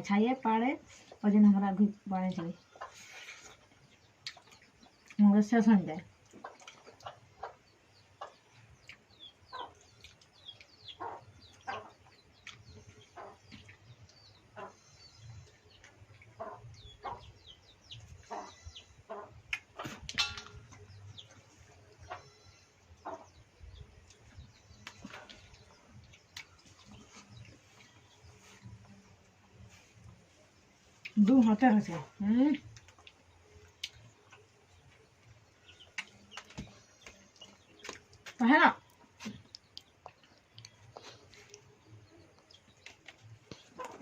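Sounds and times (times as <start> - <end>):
small birds chirping: 0.0 - 44.0
chickens clucking: 6.2 - 31.1, 39.1 - 44.0.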